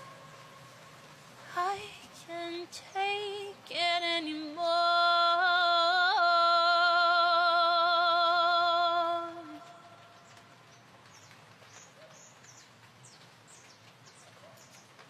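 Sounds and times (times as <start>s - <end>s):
woman singing unaccompanied: 0.0s - 10.2s.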